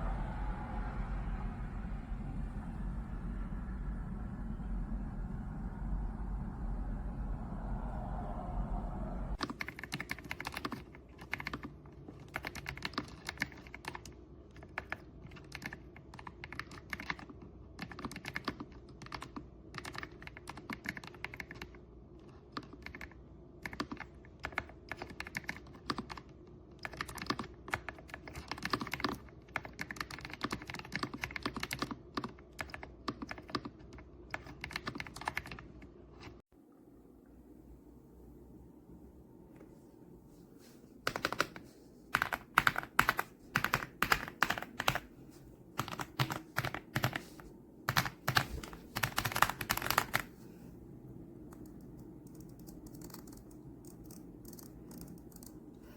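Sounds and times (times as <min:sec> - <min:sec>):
low rumble: 0:00.0 - 0:09.4.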